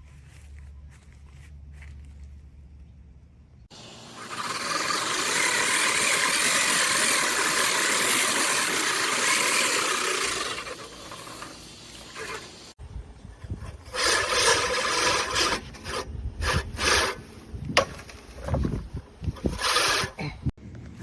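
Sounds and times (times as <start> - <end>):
reel lawn mower whirring: 3.7 - 20.3.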